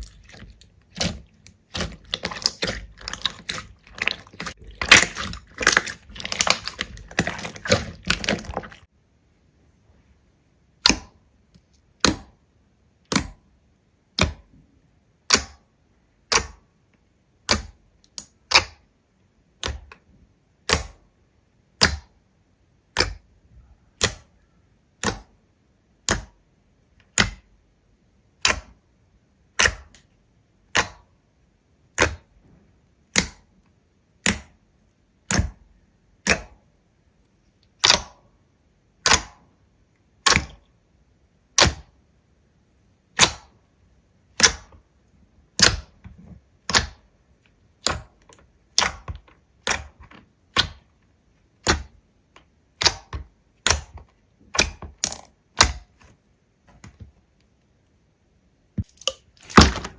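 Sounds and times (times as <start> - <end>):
slime squished by hand: 0.0 - 8.9, 37.7 - 38.3.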